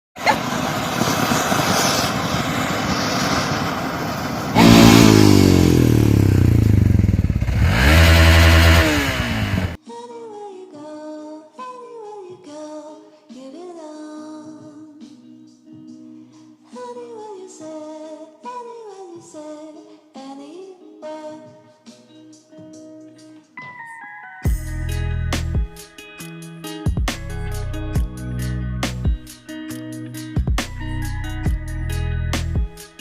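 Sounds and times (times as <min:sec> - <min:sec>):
engine-like drone: 0:00.2 - 0:09.8
loud rushing noise: 0:00.2 - 0:09.8
music with plucked notes: 0:22.2 - 0:33.0.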